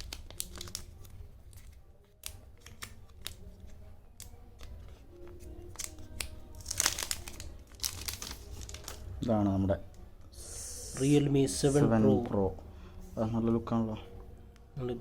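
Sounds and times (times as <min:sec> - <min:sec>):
plastic wrap crackling: 0:00.0 - 0:09.3.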